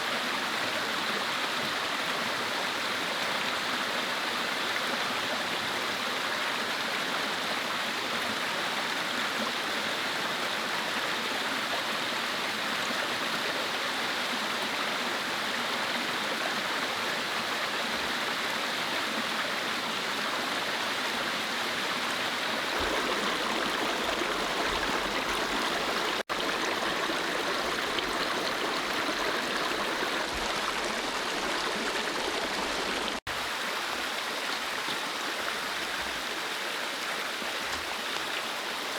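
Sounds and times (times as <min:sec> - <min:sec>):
mountain stream flowing: 0:00.0 - 0:38.9.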